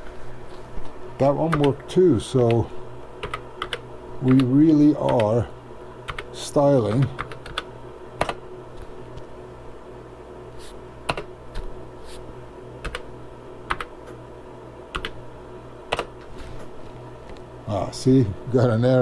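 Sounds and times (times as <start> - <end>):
steady low hum: 0.0 - 19.0
keyboard keys clicking: 3.2 - 4.5, 6.1 - 6.3, 6.9 - 9.0, 11.1 - 11.7, 12.8 - 13.1, 13.7 - 13.9, 14.9 - 15.2, 15.9 - 16.1.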